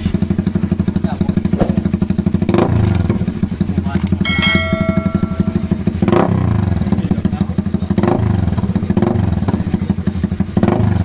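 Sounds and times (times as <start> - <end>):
motorcycle engine idling: 0.0 - 11.0
throttle blips: 4.0 - 6.0.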